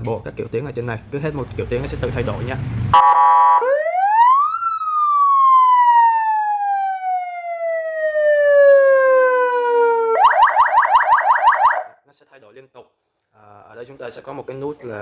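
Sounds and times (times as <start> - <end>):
electronic siren wailing: 3.0 - 12.0.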